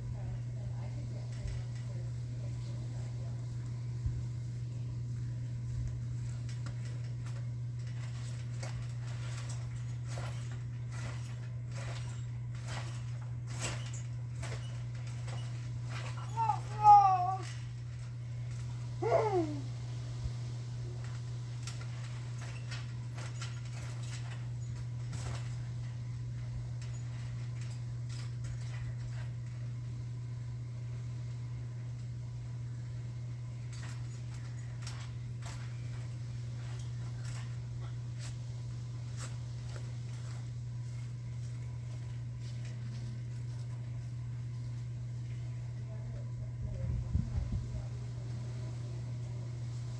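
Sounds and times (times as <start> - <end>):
steady low hum: 0.0 - 49.9.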